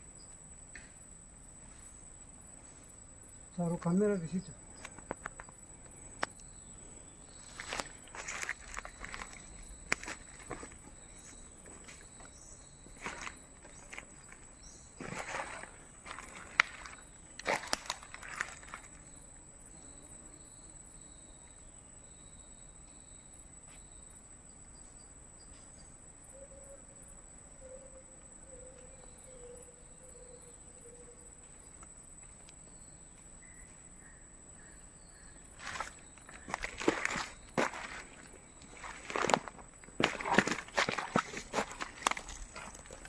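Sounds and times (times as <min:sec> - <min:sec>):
rustling footsteps: 0:07.3 - 0:19.0, 0:35.5 - 0:43.0
handling noises: 0:07.4 - 0:19.0, 0:35.6 - 0:43.0.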